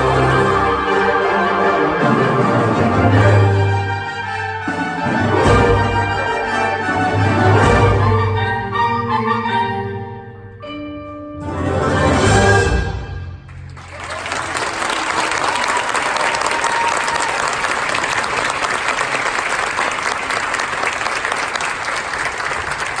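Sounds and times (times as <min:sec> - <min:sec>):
bells and mallet percussion ringing: 0:00.0 - 0:01.3
audience applause: 0:00.0 - 0:01.8, 0:13.5 - 0:23.0.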